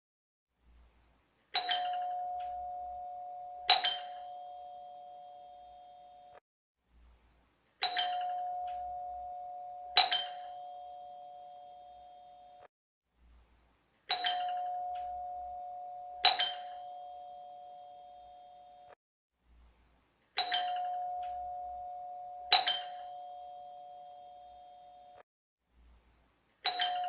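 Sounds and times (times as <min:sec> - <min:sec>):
doorbell chime ding-dong: 0:01.6 - 0:06.4, 0:07.8 - 0:12.7, 0:14.1 - 0:19.0, 0:20.4 - 0:25.2, 0:26.7 - 0:27.0.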